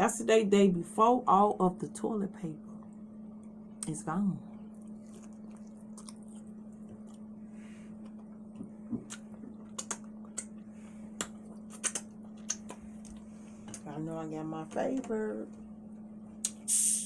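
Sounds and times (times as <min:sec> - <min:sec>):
steady low hum: 0:00.0 - 0:17.0
wet chewing mouth sounds: 0:04.4 - 0:13.4.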